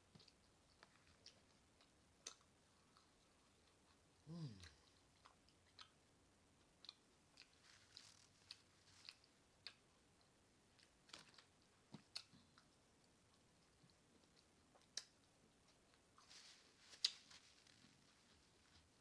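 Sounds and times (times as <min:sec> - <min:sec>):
wet chewing: 0:00.1 - 0:19.0
low throat sound: 0:04.2 - 0:04.8.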